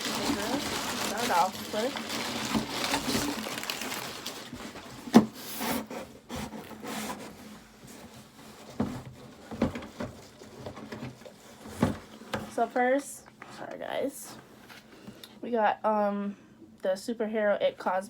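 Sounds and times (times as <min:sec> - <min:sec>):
tissue paper rustling: 0:00.0 - 0:12.7
knocks and taps of items moved: 0:08.7 - 0:13.4.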